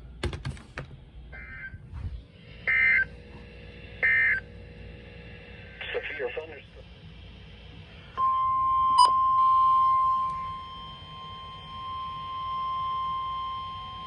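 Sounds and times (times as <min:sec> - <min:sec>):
faint radio static: 0:05.2 - 0:08.0
high-pitched alarm tone: 0:08.2 - 0:14.0.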